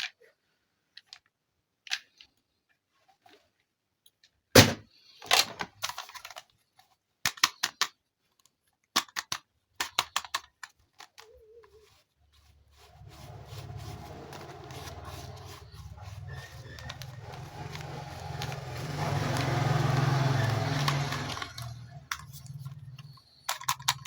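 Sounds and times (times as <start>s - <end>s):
plastic parts clicking and knocking: 0.9s - 2.5s, 4.0s - 11.7s, 16.8s - 24.0s
toy motor buzzing hum: 12.9s - 24.0s.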